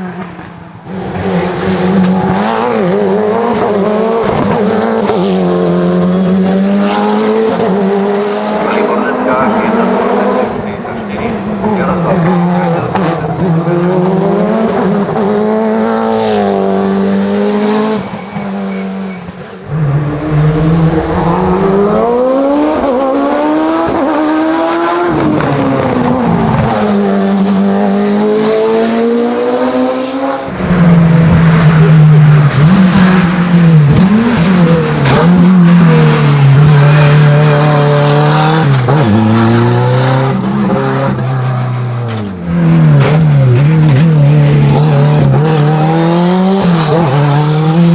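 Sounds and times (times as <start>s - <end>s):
race car engines at full throttle: 0.0s - 47.9s
louder low-pitched engine: 19.6s - 22.7s.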